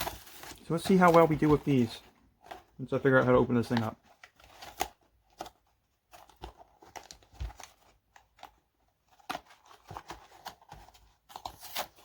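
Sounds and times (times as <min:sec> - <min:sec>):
packaging clicks and scrapes: 0:00.0 - 0:02.7.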